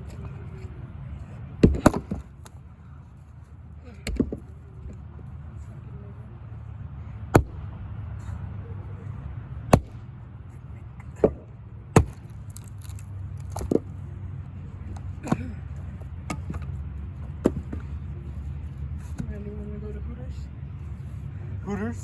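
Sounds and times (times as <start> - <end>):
axe splitting firewood: 1.6 - 2.6, 3.9 - 5.0, 7.3 - 7.7, 9.7 - 10.1, 11.0 - 14.0, 14.9 - 18.0.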